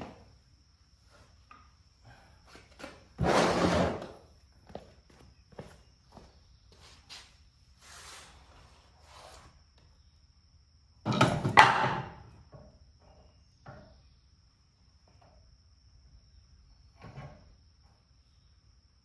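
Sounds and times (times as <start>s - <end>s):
metal tools clattering: 11.1s - 11.9s.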